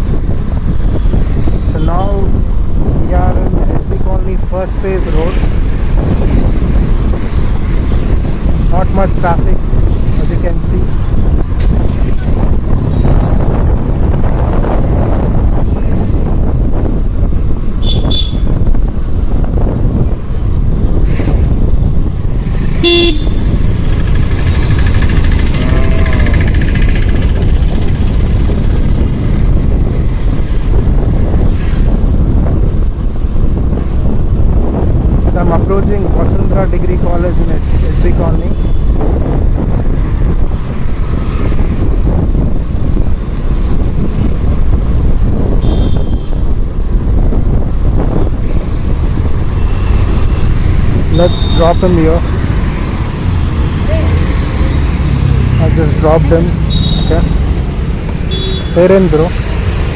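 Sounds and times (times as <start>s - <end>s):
motorcycle engine and wind rumbling: 0.0s - 59.9s
vehicle horn toot: 17.8s - 18.5s, 22.8s - 23.4s, 45.6s - 46.4s, 56.7s - 57.2s, 58.3s - 58.8s.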